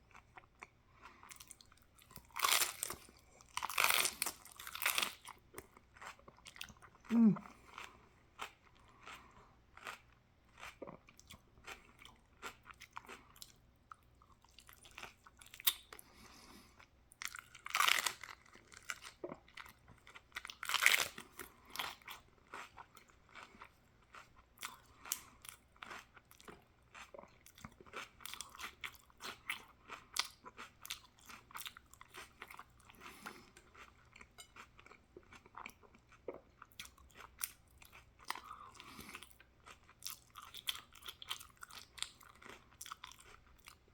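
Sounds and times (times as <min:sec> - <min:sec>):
person chewing crunchy food: 0:00.0 - 0:43.9.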